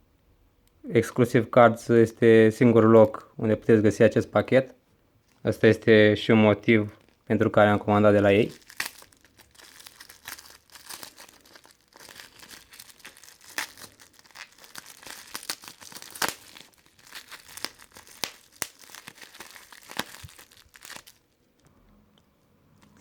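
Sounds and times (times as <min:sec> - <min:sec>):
packaging crinkling and tearing: 0:06.9 - 0:21.4.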